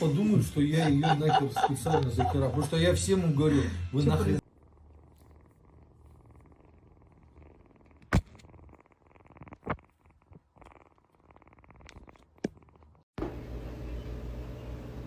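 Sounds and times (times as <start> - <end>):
cat purring: 4.0 - 13.1.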